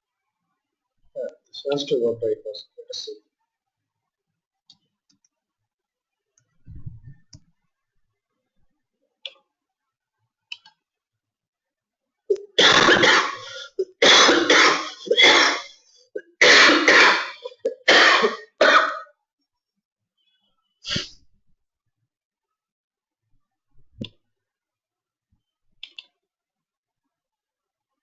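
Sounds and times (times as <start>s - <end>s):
faint clicks: 10.5s - 10.8s, 25.8s - 26.2s
person coughing hard: 12.3s - 19.1s.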